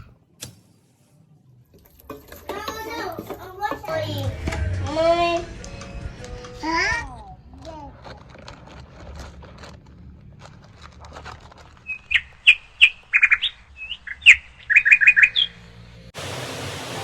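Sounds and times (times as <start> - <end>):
bird chirping: 11.8 - 15.8.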